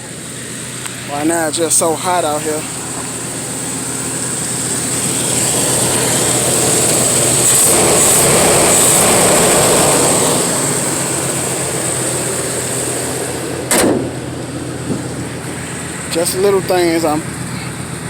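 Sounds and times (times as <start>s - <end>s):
vehicle passing: 0.0s - 18.0s
high-pitched hiss: 0.2s - 13.7s.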